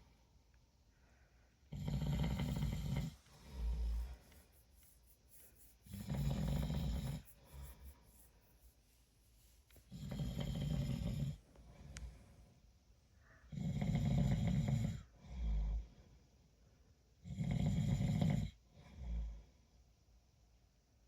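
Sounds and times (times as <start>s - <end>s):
person snoring: 1.7s - 4.6s, 5.6s - 8.3s, 9.8s - 11.4s.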